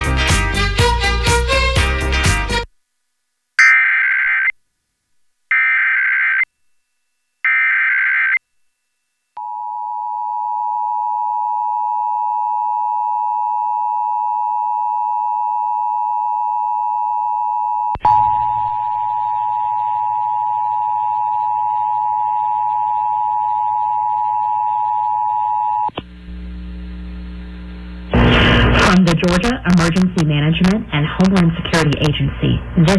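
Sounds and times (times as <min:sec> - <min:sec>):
warbling data tone bursts: 0:03.6 - 0:04.5
low hum: 0:18.0 - 0:32.9.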